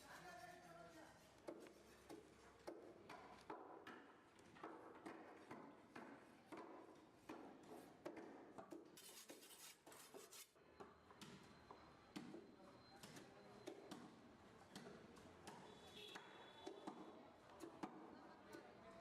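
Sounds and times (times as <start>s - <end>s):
knife scraping fish: 9.0s - 10.6s.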